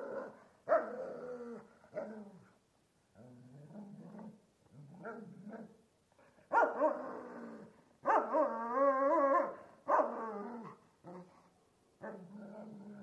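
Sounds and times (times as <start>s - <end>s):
loud drawn-out dog barks: 0.0s - 1.0s, 6.5s - 7.1s, 8.0s - 8.5s, 9.3s - 10.2s
dog growling low: 3.2s - 5.7s, 12.1s - 13.0s.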